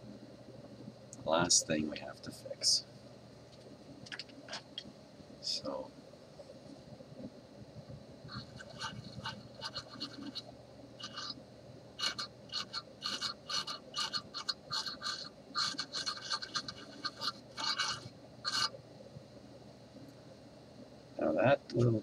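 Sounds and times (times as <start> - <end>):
short scratching strokes: 8.3 - 10.4, 11.0 - 11.4, 12.0 - 18.8.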